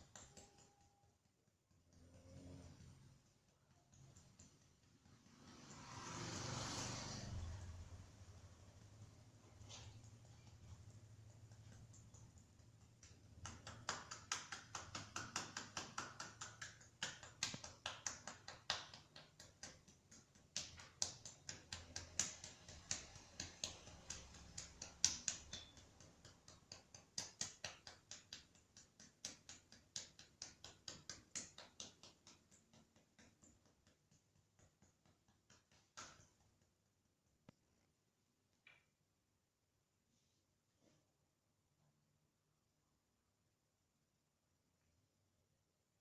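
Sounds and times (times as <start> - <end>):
sharp clicking taps: 2.8 - 5.6, 8.7 - 37.6.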